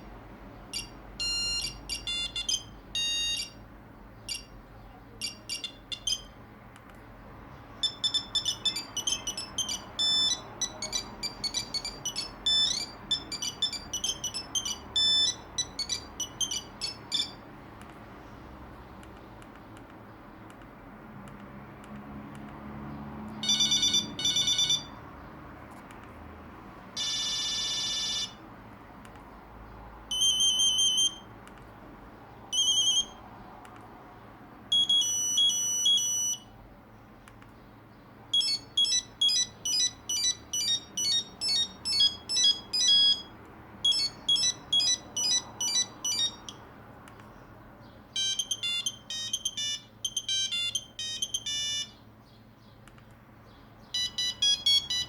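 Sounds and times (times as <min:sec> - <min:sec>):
monophonic ringtone melody: 0:00.7 - 0:03.6, 0:04.3 - 0:04.6, 0:05.2 - 0:06.4, 0:07.8 - 0:17.5, 0:23.4 - 0:25.0, 0:27.0 - 0:28.4, 0:30.1 - 0:31.3, 0:32.5 - 0:33.2, 0:34.7 - 0:36.5, 0:38.3 - 0:46.7, 0:48.1 - 0:52.0, 0:53.9 - 0:55.0
phone beep patterns: 0:00.7 - 0:03.6, 0:04.2 - 0:04.6, 0:05.2 - 0:06.4, 0:07.8 - 0:17.4, 0:23.4 - 0:25.0, 0:27.0 - 0:28.4, 0:30.1 - 0:31.3, 0:32.5 - 0:33.2, 0:34.7 - 0:36.5, 0:38.3 - 0:46.6, 0:48.2 - 0:52.0, 0:53.9 - 0:55.0
phone held tone: 0:00.7 - 0:03.6, 0:05.2 - 0:06.4, 0:07.8 - 0:17.4, 0:23.4 - 0:25.0, 0:27.0 - 0:28.4, 0:30.1 - 0:31.3, 0:32.5 - 0:33.2, 0:34.7 - 0:36.5, 0:38.3 - 0:46.6, 0:48.2 - 0:52.0, 0:53.9 - 0:55.0.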